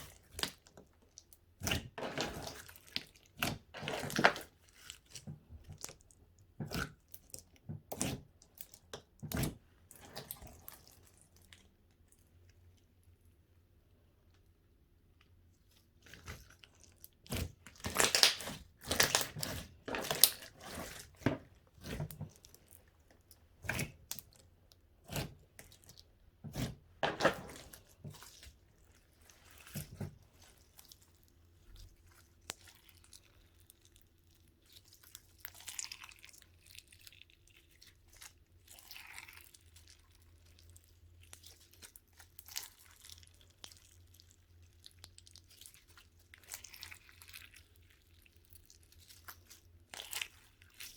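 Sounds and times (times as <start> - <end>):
slime squishing: 0.0 - 50.9
slime tearing and crackling: 16.0 - 21.2.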